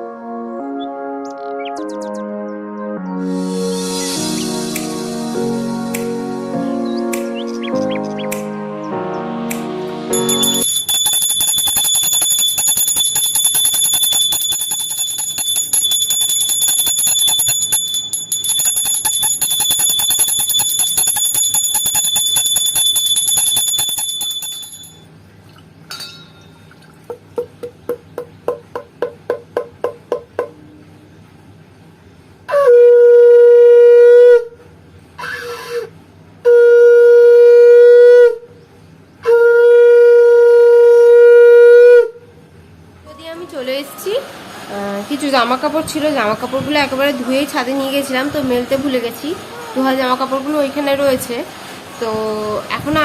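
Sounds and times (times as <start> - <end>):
brass hand bell ringing: 10.1 - 25.0.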